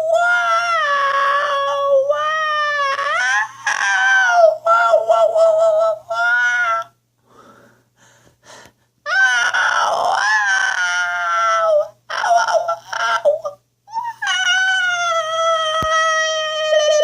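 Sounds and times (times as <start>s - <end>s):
high-pitched whining cries: 9.1s - 17.0s.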